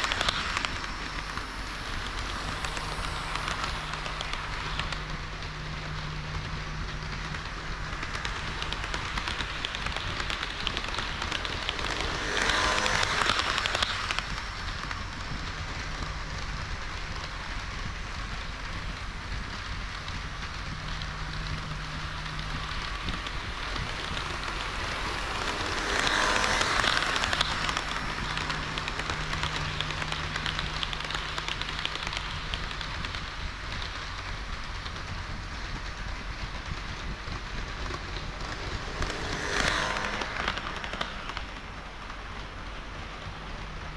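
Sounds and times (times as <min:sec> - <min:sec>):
faint motor hum: 0:00.0 - 0:43.9
model train wheels rolling hiss: 0:00.0 - 0:43.9.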